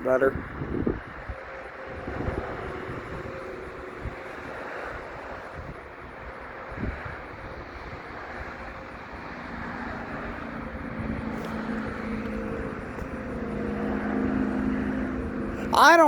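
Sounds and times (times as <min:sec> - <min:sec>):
traffic noise: 0:00.0 - 0:16.0
vehicle engine hum: 0:00.0 - 0:16.0.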